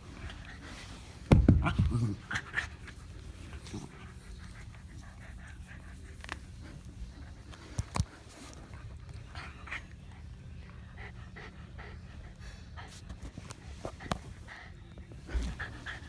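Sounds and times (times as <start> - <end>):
dogs panting: 0.0 - 16.0.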